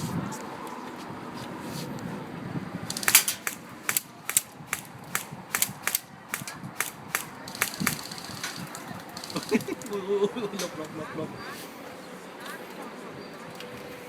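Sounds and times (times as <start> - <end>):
airsoft gun shots: 2.9 - 9.8.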